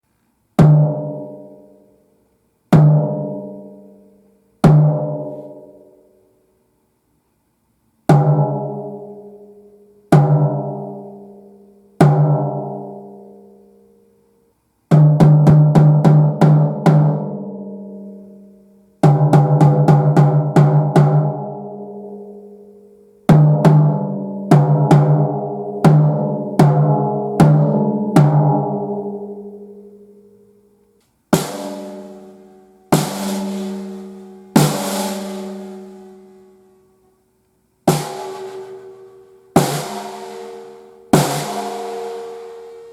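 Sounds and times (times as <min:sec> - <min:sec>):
snare drum hits: 0:31.4 - 0:36.3, 0:37.9 - 0:39.0, 0:39.6 - 0:42.9.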